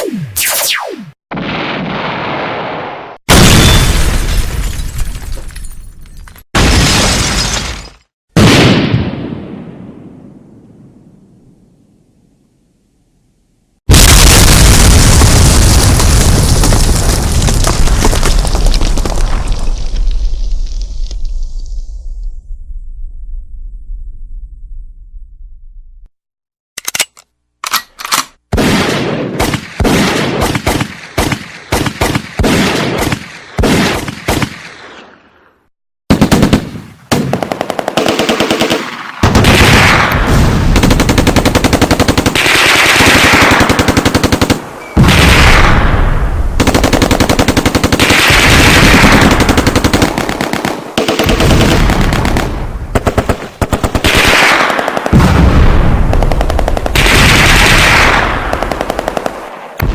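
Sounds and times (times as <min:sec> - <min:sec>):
automatic machine-gun fire: 0:36.1 - 0:45.6, 0:46.6 - 0:59.9.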